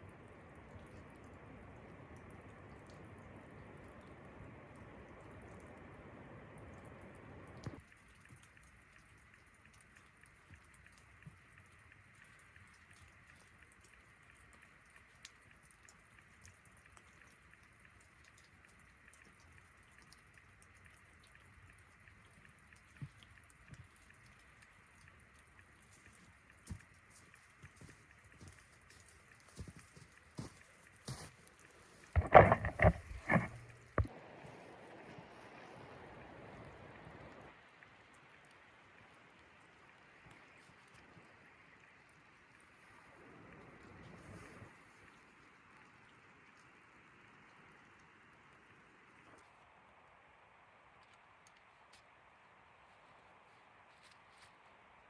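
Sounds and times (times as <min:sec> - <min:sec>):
light rain pattering: 0:00.0 - 0:55.0
knocks and thumps: 0:32.2 - 0:34.1.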